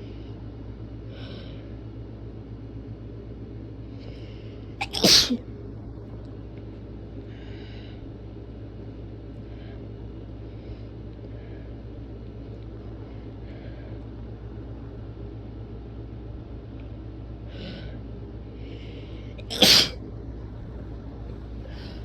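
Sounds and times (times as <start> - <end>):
faint breathing: 0.0 - 1.9, 3.8 - 4.8, 7.2 - 8.4, 9.3 - 14.6, 17.3 - 19.5, 21.4 - 22.0
person sneezing: 4.8 - 5.4, 19.4 - 20.0.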